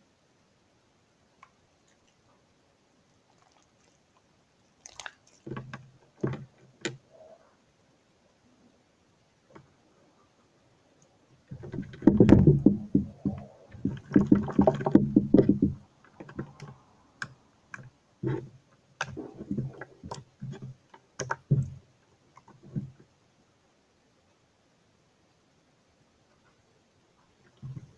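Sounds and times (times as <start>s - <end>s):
slime squelching by hand: 3.2s - 6.4s.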